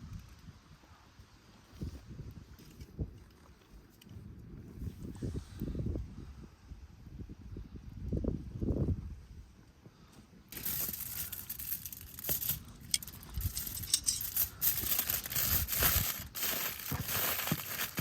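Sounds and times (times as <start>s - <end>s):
crunching and crinkling: 10.5s - 18.0s.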